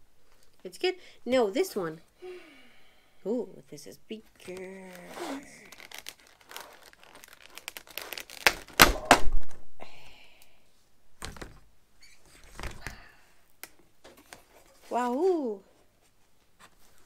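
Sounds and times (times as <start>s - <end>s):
packaging rustling and crinkling: 4.3s - 9.6s.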